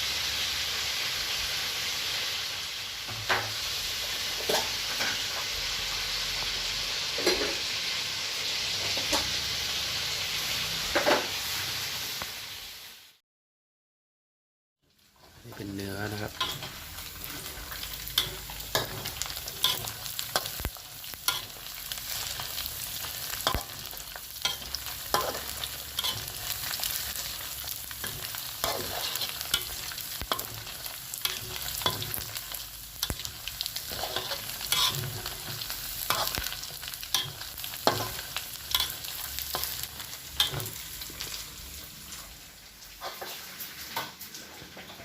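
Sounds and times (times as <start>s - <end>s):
beef sizzling in hot oil: 0.0s - 13.2s, 14.8s - 45.0s
fat popping and crackling: 18.1s - 21.5s, 23.4s - 23.8s.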